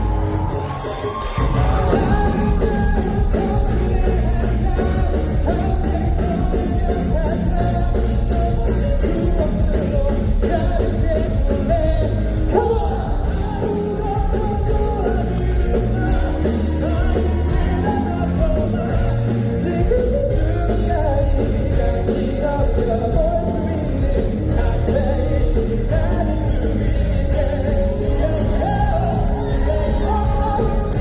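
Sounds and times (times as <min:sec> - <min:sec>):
lead singing: 0:00.0 - 0:31.0
pop-rock band playing: 0:00.0 - 0:31.0.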